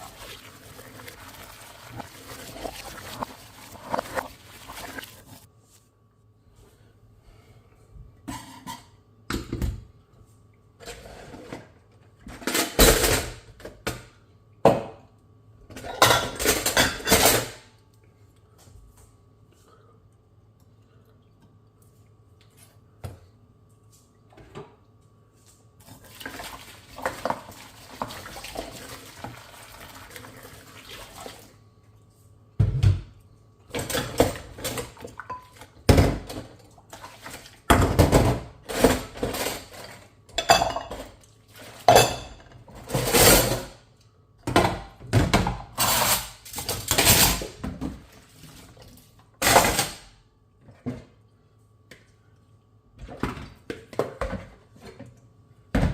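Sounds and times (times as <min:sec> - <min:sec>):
water swishing: 0:00.0 - 0:05.5.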